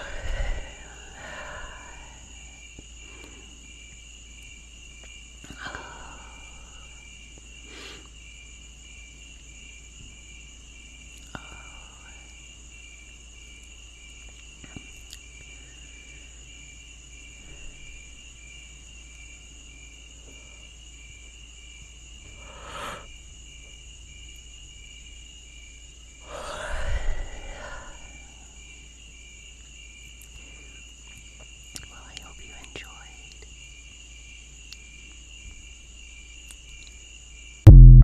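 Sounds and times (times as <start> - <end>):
faint breathy sounds: 0.0 - 4.0, 5.4 - 8.2, 11.2 - 12.6, 22.2 - 23.3, 26.2 - 29.2
insects chirping: 0.0 - 38.0.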